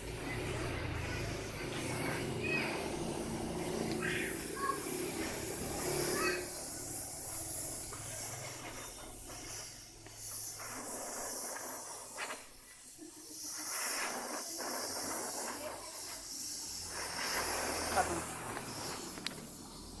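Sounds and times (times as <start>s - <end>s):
bandsaw blade hissing: 0.0s - 20.0s.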